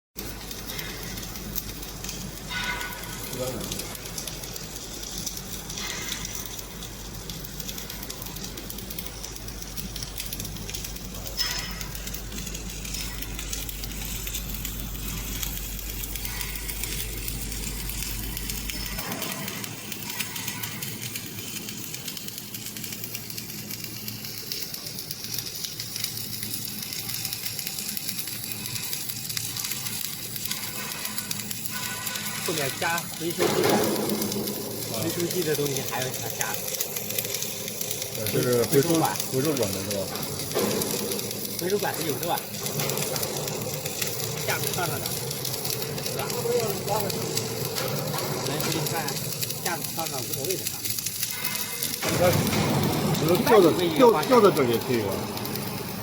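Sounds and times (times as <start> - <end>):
welding arc crackling hiss: 0.2 - 56.0.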